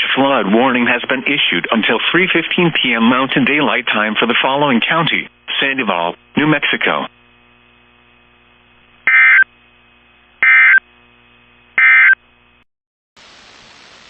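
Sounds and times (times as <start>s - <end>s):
steady hiss: 13.2s - 14.0s.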